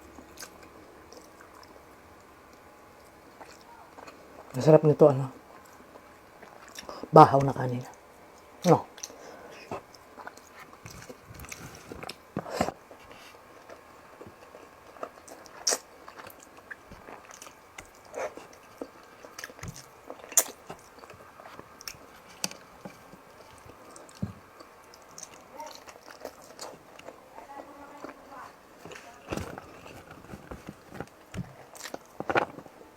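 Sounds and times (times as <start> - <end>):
person chewing: 0.1 - 1.8, 2.5 - 4.6, 5.5 - 7.5, 8.3 - 32.8.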